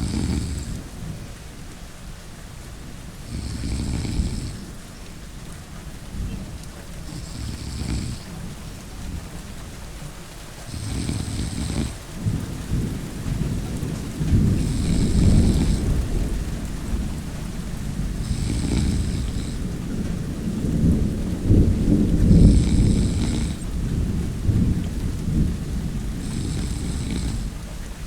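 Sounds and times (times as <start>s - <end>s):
person snoring: 0.0s - 0.8s, 3.2s - 4.7s, 7.1s - 8.3s, 10.7s - 12.0s, 14.6s - 15.9s, 18.2s - 19.7s, 22.3s - 23.7s, 26.2s - 27.6s
steady rain: 0.0s - 28.0s
rumbling thunder: 5.8s - 28.0s.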